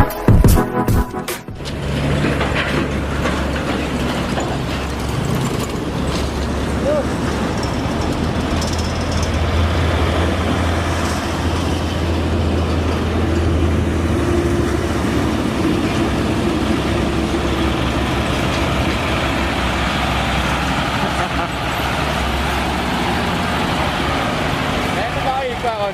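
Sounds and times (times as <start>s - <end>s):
diesel truck engine droning: 0.0s - 25.9s.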